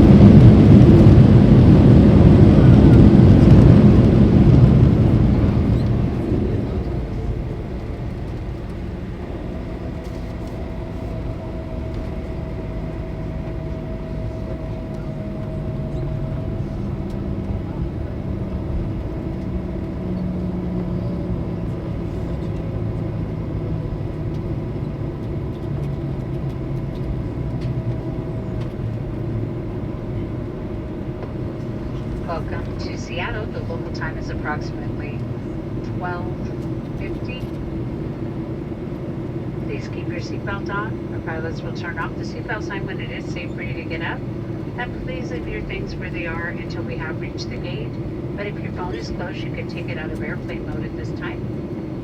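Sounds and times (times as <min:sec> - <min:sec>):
taxi rumble: 0:00.0 - 0:23.1
jet engine roar: 0:00.0 - 0:52.0
jet engine whine: 0:00.0 - 0:52.0.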